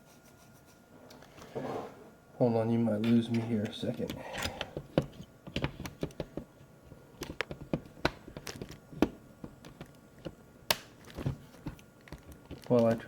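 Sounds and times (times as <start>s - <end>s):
plastic laptop parts clicking: 7.2s - 13.0s.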